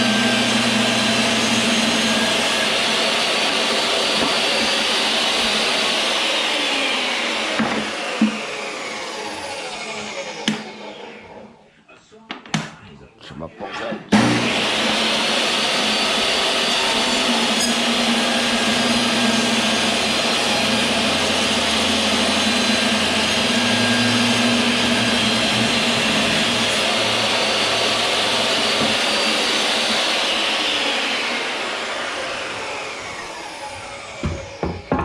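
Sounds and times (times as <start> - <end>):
table saw running: 0.0 - 11.5, 14.1 - 35.0.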